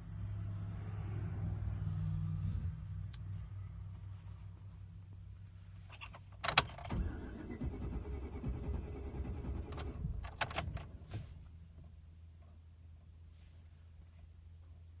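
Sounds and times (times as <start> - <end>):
engine cranking without starting: 6.0 - 11.0.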